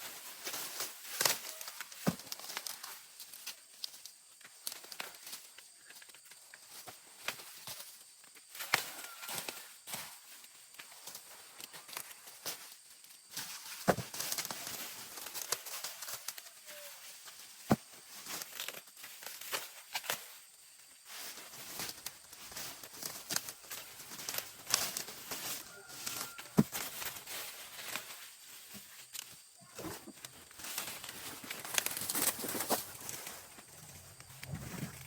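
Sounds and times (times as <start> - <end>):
leaves and stalks rustling: 0.0 - 35.0
plant stalks snapping: 30.6 - 33.2.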